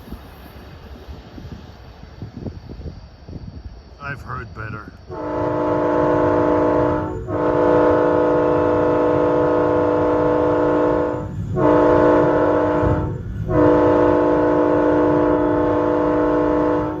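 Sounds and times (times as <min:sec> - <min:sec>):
low rumble of passing train: 0:00.0 - 0:17.0
train air horn blasts: 0:05.1 - 0:17.0.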